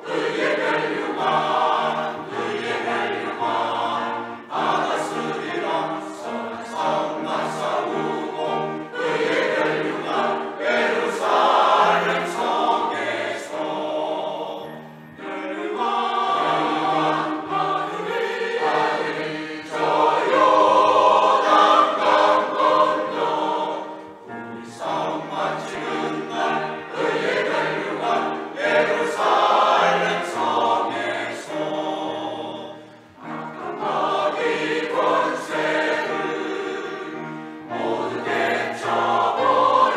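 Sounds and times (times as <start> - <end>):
choir singing: 0.0 - 39.9.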